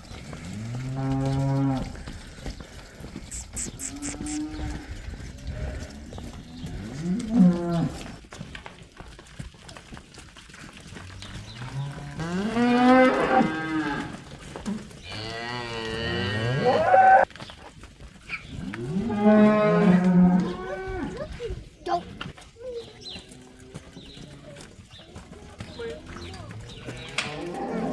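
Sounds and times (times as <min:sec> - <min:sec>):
cattle mooing: 0:00.3 - 0:02.1, 0:03.3 - 0:08.2, 0:15.1 - 0:17.2.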